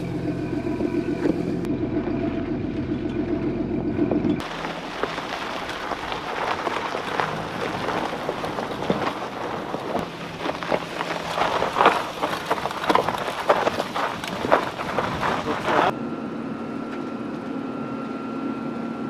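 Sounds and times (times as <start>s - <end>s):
crackling and crunching: 4.4s - 15.9s.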